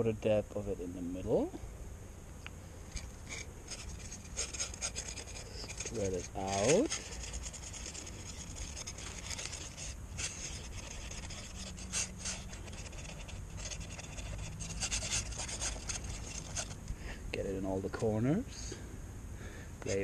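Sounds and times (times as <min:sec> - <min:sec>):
epoxy rubbing and scraping: 0:02.8 - 0:18.2.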